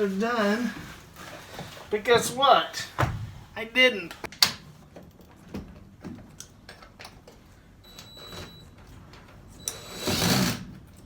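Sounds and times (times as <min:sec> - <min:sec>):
rustling noise: 0:00.0 - 0:03.6.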